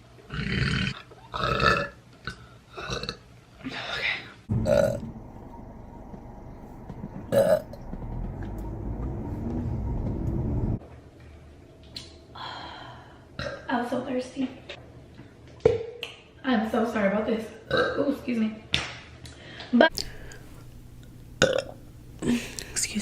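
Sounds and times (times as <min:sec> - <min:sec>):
low steady hum: 0:02.4 - 0:14.9, 0:19.9 - 0:23.0
woman burping: 0:07.3 - 0:07.6, 0:21.4 - 0:22.6.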